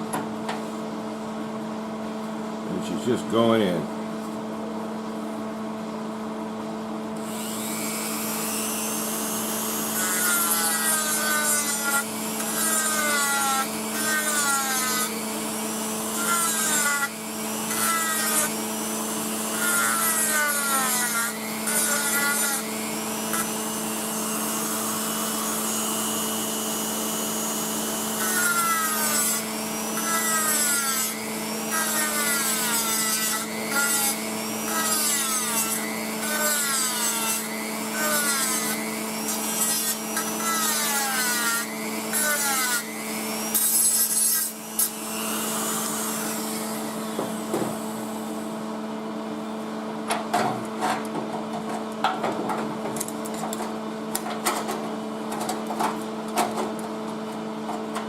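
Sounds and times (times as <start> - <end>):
steady hum: 0.0 - 9.7.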